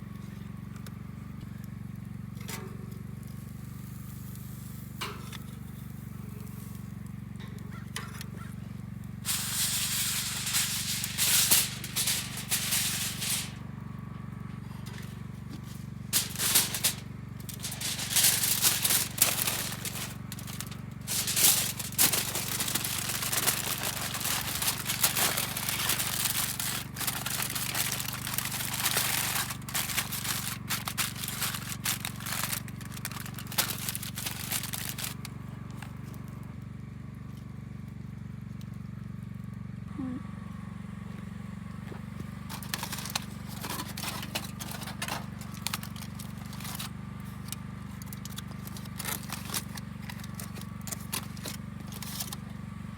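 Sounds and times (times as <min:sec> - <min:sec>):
steady low hum: 0:01.3 - 0:36.6
campfire crackling: 0:09.0 - 0:36.0, 0:41.9 - 0:52.8.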